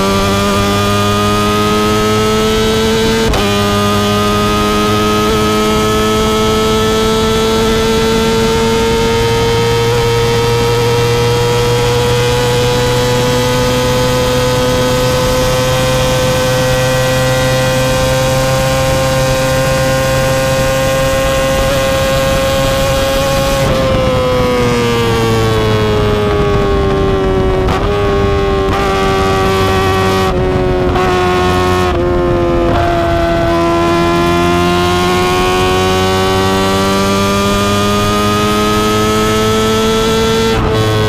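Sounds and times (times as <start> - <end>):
motorcycle engine high wail: 21.5 - 30.6.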